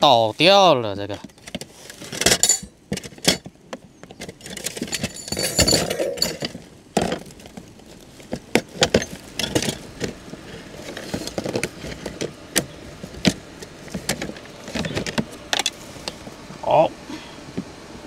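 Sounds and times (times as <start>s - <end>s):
cookware and utensils clinking: 5.0s - 6.6s.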